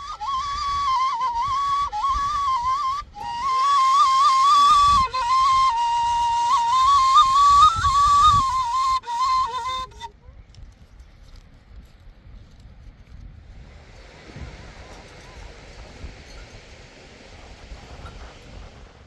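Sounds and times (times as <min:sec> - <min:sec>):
flute melody: 0:00.0 - 0:10.3.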